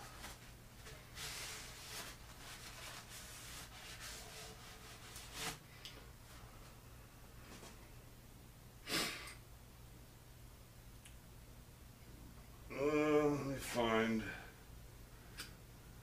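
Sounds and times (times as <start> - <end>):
soft rubbing: 0.0 - 6.7
low steady hum: 0.0 - 16.0.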